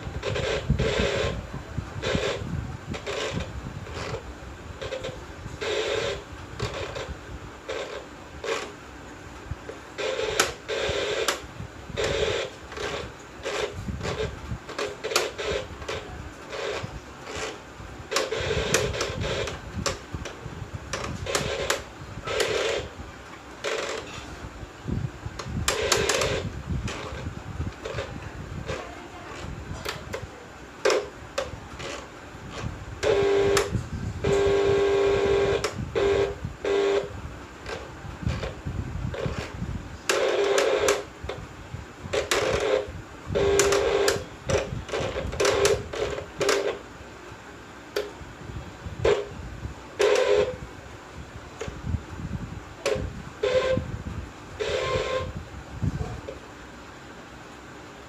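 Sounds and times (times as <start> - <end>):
hard parts clicking and rattling: 0.0 - 8.8, 9.6 - 24.4, 25.3 - 37.0, 37.6 - 46.9.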